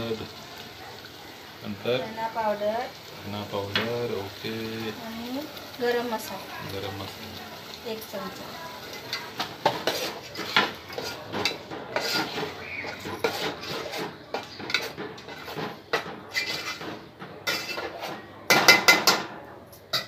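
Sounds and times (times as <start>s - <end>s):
spoon scraping cooking pot: 8.8s - 18.3s.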